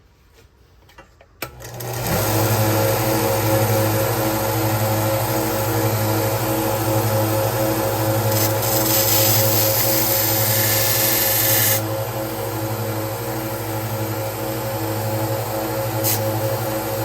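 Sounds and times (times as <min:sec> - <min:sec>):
belt sander motor running: 0:01.5 - 0:17.0
belt grinding knife blade: 0:08.4 - 0:11.8.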